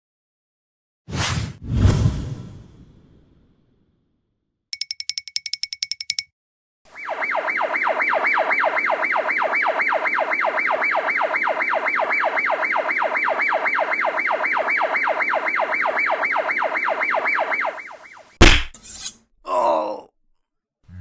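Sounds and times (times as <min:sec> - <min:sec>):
electronic siren wail: 0:06.9 - 0:18.4.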